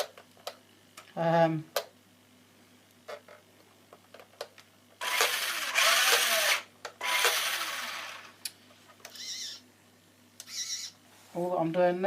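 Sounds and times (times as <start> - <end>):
toy car electric motor whirring: 5.0 - 8.3, 9.1 - 9.6.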